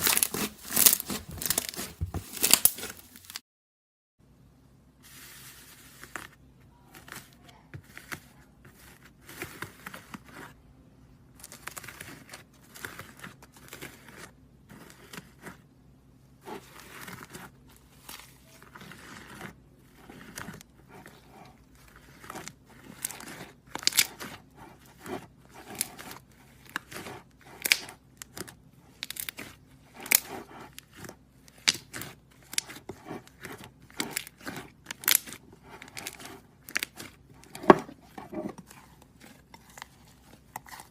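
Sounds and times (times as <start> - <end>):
slime crust crackling: 0.0 - 3.4.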